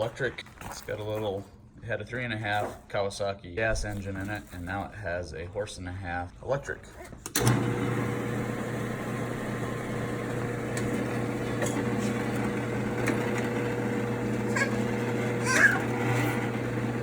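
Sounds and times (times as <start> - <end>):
electric motor humming: 7.4 - 17.0.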